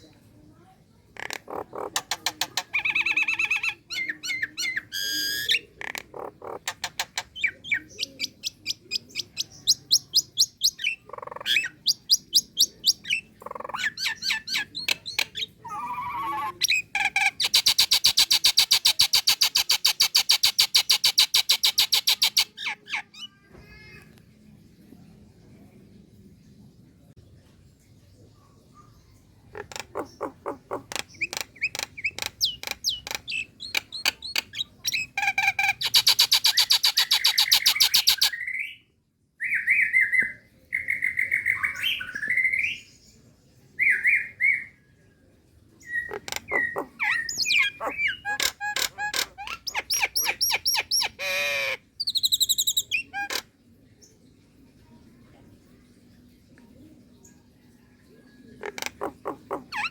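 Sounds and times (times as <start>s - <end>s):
myna clicking and whistling calls: 1.2s - 22.6s, 29.5s - 38.4s, 45.9s - 53.5s, 58.6s - 59.9s.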